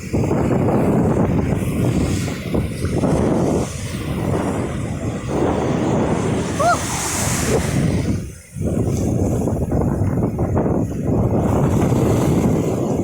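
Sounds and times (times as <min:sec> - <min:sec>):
ocean surf rushing: 0:00.0 - 0:09.8
wind buffeting microphone: 0:00.0 - 0:13.0.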